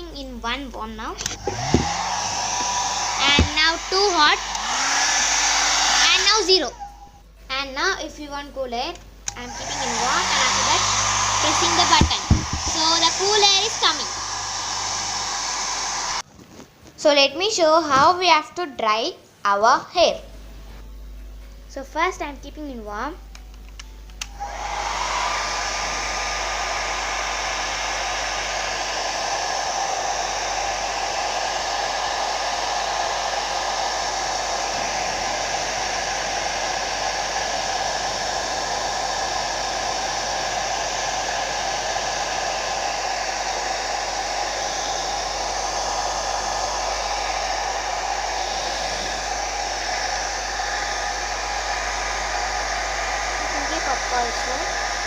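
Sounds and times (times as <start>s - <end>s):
hair dryer running: 1.2s - 7.2s, 9.3s - 16.2s, 24.2s - 55.0s.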